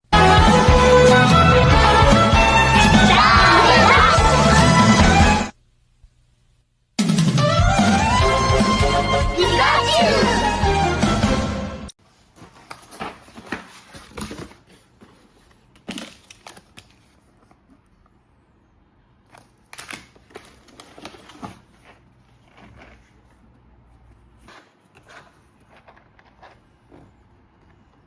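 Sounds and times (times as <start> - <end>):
background music: 0.0 - 5.5, 7.0 - 11.9.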